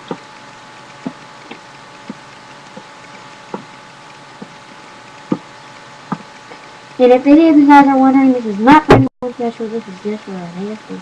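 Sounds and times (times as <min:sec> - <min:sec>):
short irregular clicks and taps: 0:00.0 - 0:06.7
steady hiss: 0:00.0 - 0:11.0.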